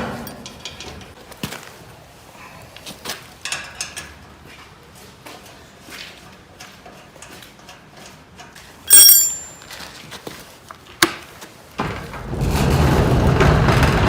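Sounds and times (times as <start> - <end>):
metal hardware ticks: 8.9 - 9.6
ringing metallic clink: 8.9 - 9.7.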